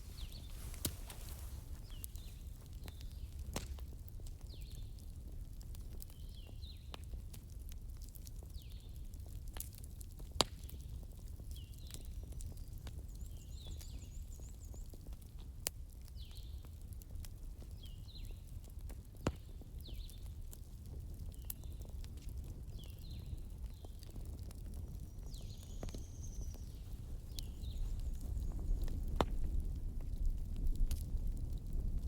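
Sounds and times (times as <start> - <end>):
campfire crackling: 0.0 - 32.0
birds chirping: 0.1 - 3.0, 25.2 - 28.9.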